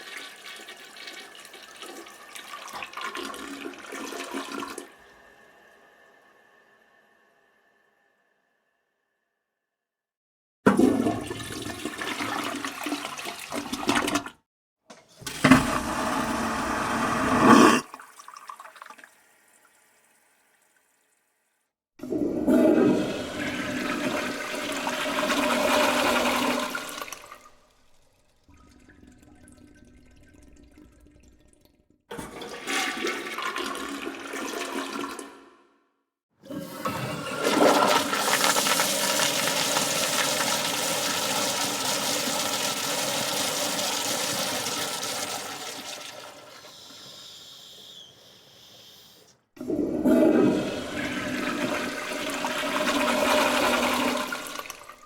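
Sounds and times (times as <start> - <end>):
toilet flushing: 0.0 - 7.2, 10.7 - 14.4, 15.1 - 20.6, 22.0 - 35.7, 36.4 - 55.0
water trickling as bowl refills: 25.6 - 31.8, 36.5 - 47.9.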